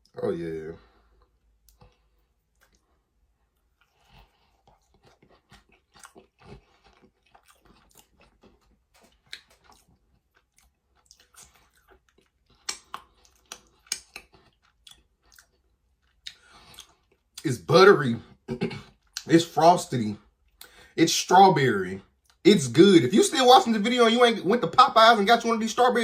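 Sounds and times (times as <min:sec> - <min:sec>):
chewing biscuit: 0:01.1 - 0:17.5
mouth smacks and clicks: 0:03.6 - 0:17.4.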